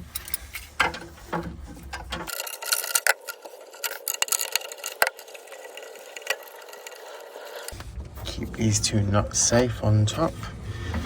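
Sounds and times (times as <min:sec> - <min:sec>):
grips clicking on metal nuts: 0:00.0 - 0:07.8.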